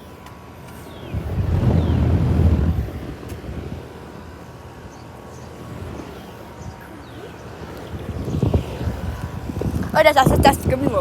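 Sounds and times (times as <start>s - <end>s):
air conditioner units humming: 0.0s - 11.0s
loud low rumble: 1.1s - 3.8s.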